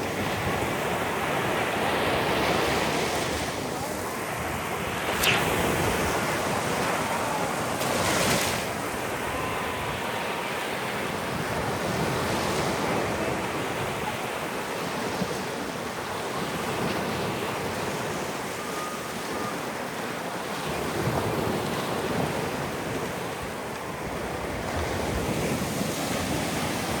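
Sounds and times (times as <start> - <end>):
wind buffeting microphone: 0.0 - 18.4
sea waves washing in: 0.0 - 27.0.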